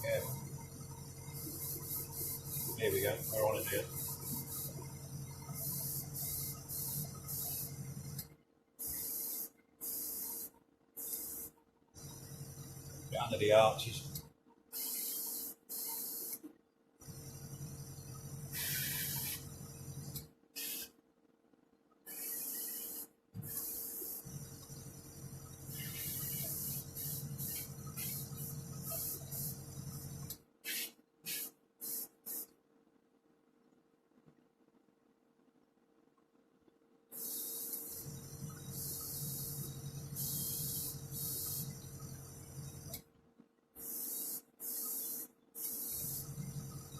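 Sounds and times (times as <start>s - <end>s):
steady low hum: 0.0s - 8.4s, 23.4s - 30.3s, 37.7s - 43.0s, 45.8s - 46.9s
airbrush spraying hiss: 1.4s - 4.8s, 5.6s - 7.8s, 8.8s - 11.5s, 14.8s - 16.4s, 18.6s - 19.5s, 20.6s - 20.9s, 22.1s - 24.4s, 25.7s - 29.8s, 30.6s - 32.5s, 37.2s - 41.8s, 43.8s - 46.9s.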